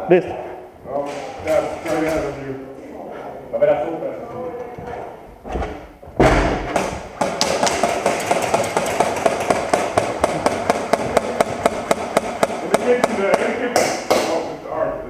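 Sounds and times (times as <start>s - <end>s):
loud knock: 5.6s - 14.5s
airsoft gun rapid fire: 7.2s - 13.2s.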